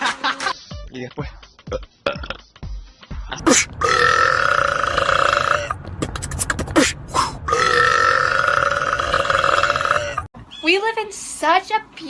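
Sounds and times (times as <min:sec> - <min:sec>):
man burping: 0:01.7 - 0:02.5, 0:03.3 - 0:05.8, 0:06.8 - 0:10.3.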